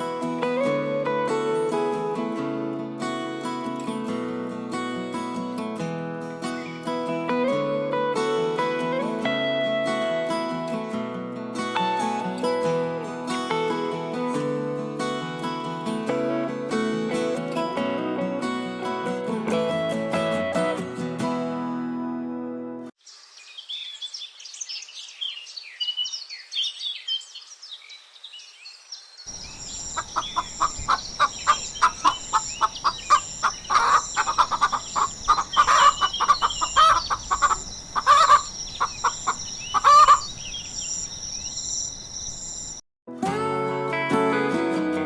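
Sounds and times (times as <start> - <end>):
high bird chirping: 29.3 - 42.8
quick repeated fowl-like calls: 29.5 - 40.6.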